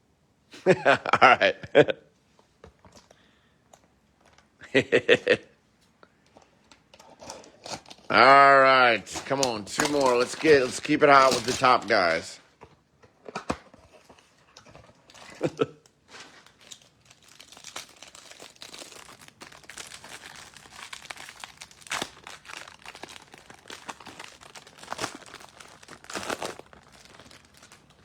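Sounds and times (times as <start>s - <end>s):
foil wrappers crinkling and tearing: 7.1s - 12.4s, 14.8s - 28.0s
cards being handled: 9.0s - 12.3s.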